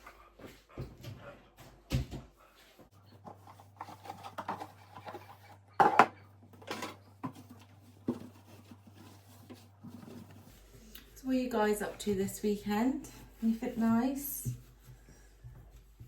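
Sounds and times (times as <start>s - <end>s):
dishes clattering: 4.4s - 7.5s
dishes clinking and knocking: 5.7s - 7.4s.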